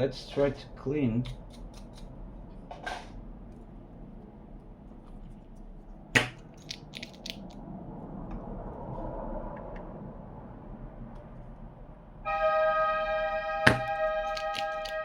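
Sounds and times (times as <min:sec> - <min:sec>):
hand tools clicking and scraping: 0:01.2 - 0:02.1, 0:13.7 - 0:15.0.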